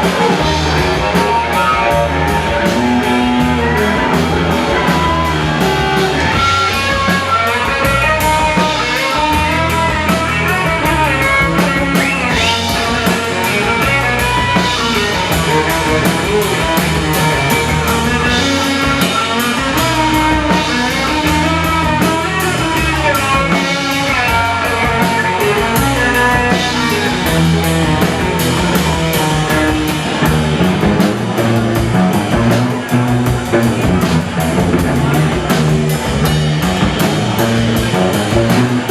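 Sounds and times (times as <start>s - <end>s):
drum kit: 0.0s - 38.9s
guitar: 0.0s - 38.9s.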